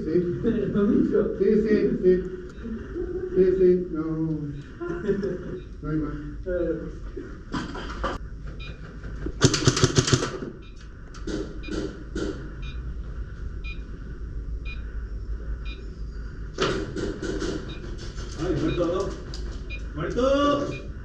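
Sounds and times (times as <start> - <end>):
airsoft guns firing: 9.4 - 10.5.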